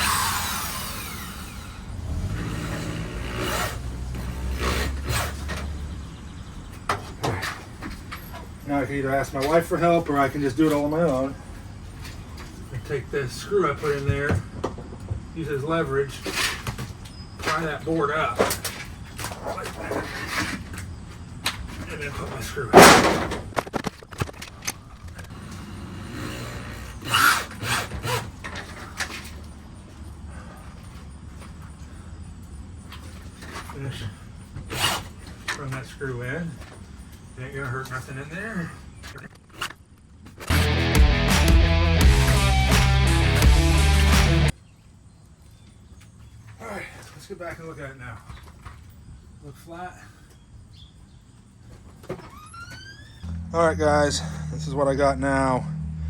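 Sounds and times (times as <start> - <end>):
power drill driving screw into wood: 0.0 - 5.9, 25.2 - 28.8, 34.7 - 35.2.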